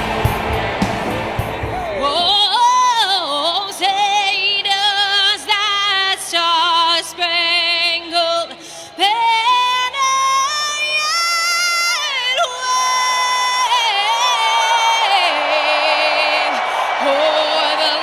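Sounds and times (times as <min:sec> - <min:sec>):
mixed noise: 0:00.0 - 0:02.4.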